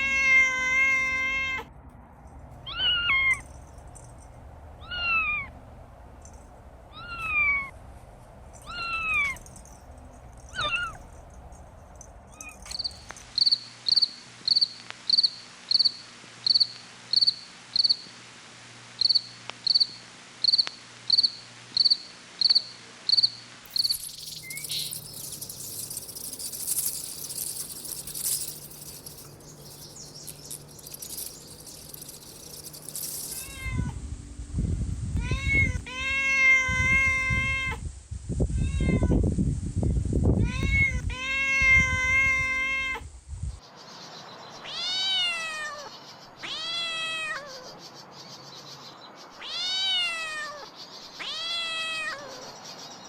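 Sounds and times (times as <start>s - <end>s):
kitten meowing: 0.0s - 1.7s, 2.6s - 3.5s, 4.8s - 5.5s, 6.9s - 7.7s, 8.6s - 9.5s, 10.5s - 11.0s, 33.2s - 34.0s, 35.2s - 37.8s, 40.4s - 43.0s, 44.6s - 47.6s, 49.4s - 52.5s
cricket chirping: 8.5s - 18.1s, 19.0s - 33.8s.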